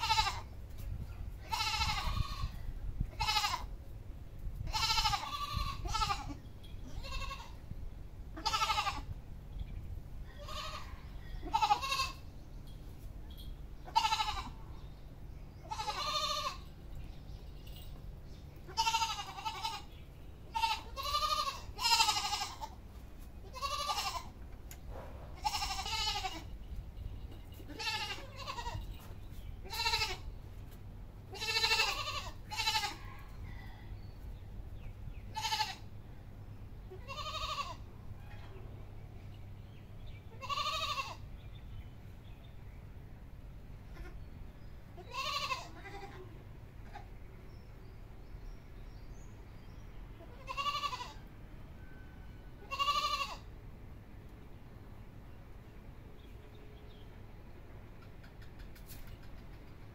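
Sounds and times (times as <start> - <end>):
goat bleating: 0.0 - 0.5, 1.4 - 3.7, 4.7 - 7.7, 8.3 - 9.2, 10.2 - 12.3, 13.8 - 14.6, 15.6 - 16.8, 18.6 - 22.8, 23.4 - 24.4, 25.4 - 26.6, 27.5 - 29.0, 29.6 - 30.4, 31.3 - 33.1, 35.3 - 35.9, 36.8 - 37.9, 40.3 - 41.2, 43.9 - 44.3, 45.0 - 47.2, 50.2 - 51.2, 52.6 - 53.5.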